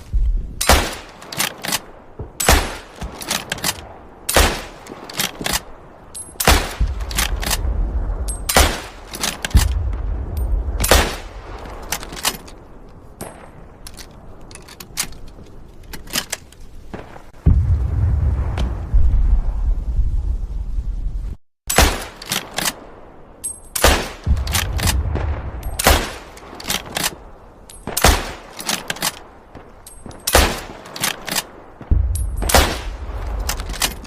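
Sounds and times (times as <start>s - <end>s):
rifle shots: 0.6s - 5.8s, 6.4s - 7.7s, 8.3s - 12.6s, 21.7s - 23.0s, 23.8s - 34.0s
rifle bolt clicks and clacks: 0.6s - 7.7s, 8.3s - 9.8s, 10.4s - 16.6s, 21.8s - 22.8s, 23.4s - 25.0s, 25.6s - 31.6s, 32.2s - 34.0s.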